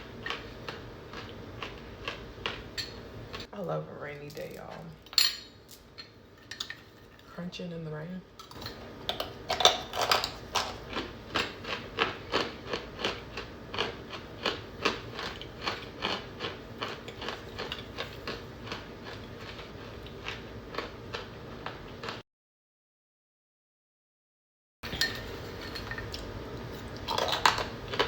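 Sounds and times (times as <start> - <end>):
person crunching and chewing: 0.0 - 3.5, 9.5 - 22.2, 26.1 - 28.0.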